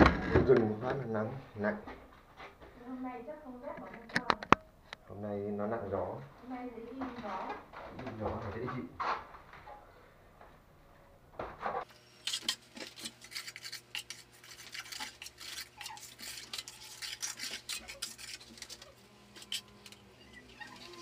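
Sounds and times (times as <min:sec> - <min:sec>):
trowel scraping wet mortar: 0:12.2 - 0:21.0.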